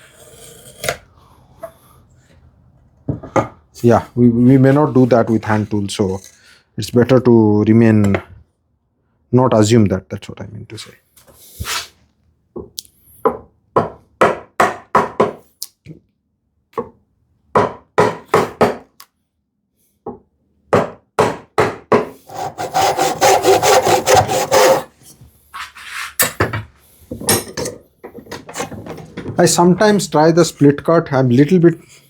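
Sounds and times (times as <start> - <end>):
hand saw cutting wood: 22.2 - 25.0.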